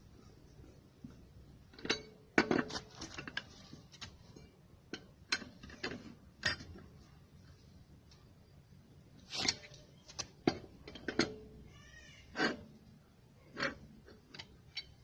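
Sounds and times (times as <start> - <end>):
tool handling: 1.8 - 4.3.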